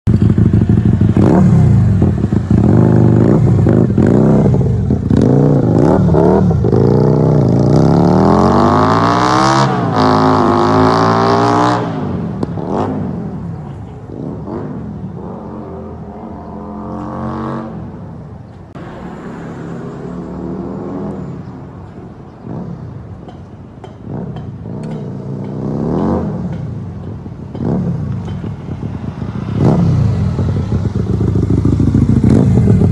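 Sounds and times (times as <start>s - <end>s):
motorcycle engine revving: 0.1s - 18.3s, 24.0s - 32.9s.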